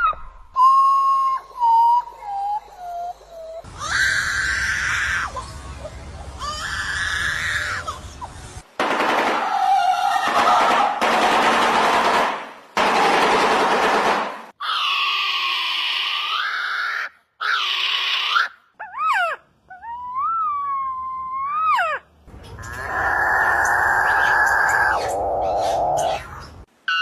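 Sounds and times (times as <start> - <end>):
clear bird whistle: 0.0 - 3.0
harsh rasping bird screeches: 14.6 - 18.5
drawn-out bird calls bending in pitch: 21.7 - 27.0.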